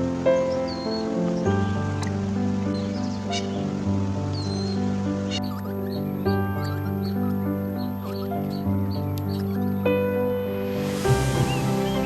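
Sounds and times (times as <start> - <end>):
slow held chords music: 0.0 - 12.0
bird chirp: 4.3 - 12.0
high whistled note: 10.4 - 12.0.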